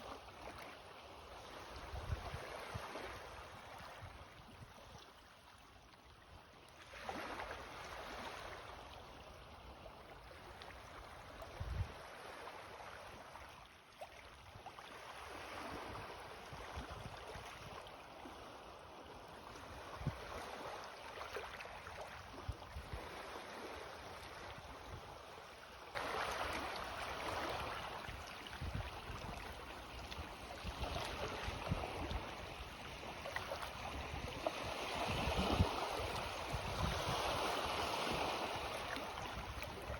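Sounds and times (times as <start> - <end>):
small waves lapping on shore: 0.0 - 39.9.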